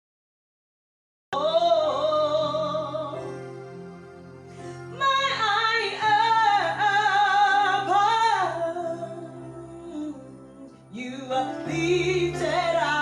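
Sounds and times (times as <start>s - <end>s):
woman singing gospel song: 1.4s - 3.3s, 5.0s - 13.0s
held accompaniment chord: 1.4s - 13.0s.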